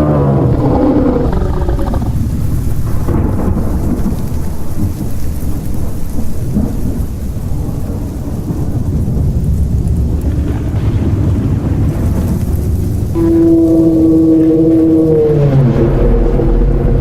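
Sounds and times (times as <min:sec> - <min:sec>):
ghostly moan: 0:00.0 - 0:03.5, 0:13.1 - 0:17.0
deep rumble: 0:00.0 - 0:17.0.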